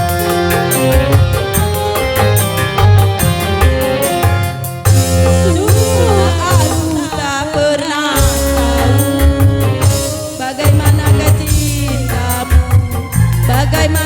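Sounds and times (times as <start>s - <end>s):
dance remix music: 5.3s - 7.8s.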